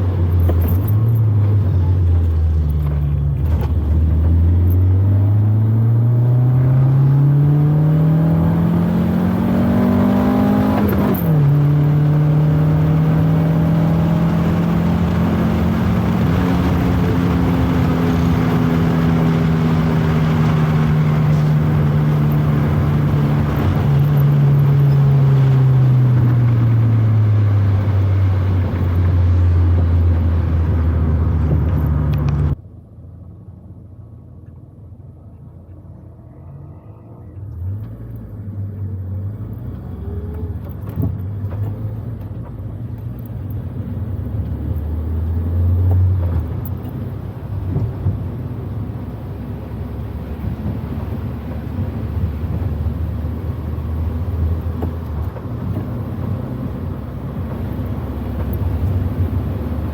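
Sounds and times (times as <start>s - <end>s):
car engine revving: 0.0s - 32.6s, 36.3s - 42.5s
faint low rumble: 28.8s - 43.3s.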